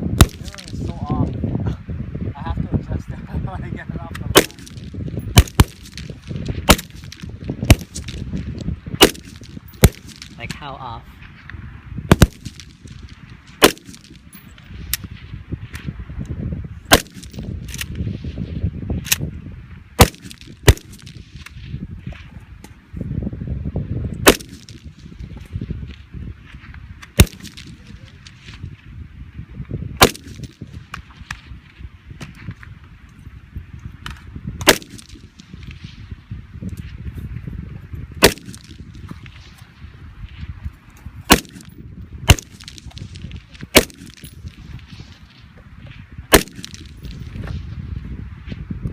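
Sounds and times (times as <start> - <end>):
rifle shots: 0.2 - 0.9, 4.3 - 8.4, 9.0 - 10.5, 12.1 - 14.3, 16.9 - 17.9, 20.0 - 21.4, 24.2 - 25.1, 27.2 - 28.6, 30.0 - 30.6, 34.6 - 35.8, 38.2 - 38.8, 41.3 - 45.0, 46.3 - 47.2.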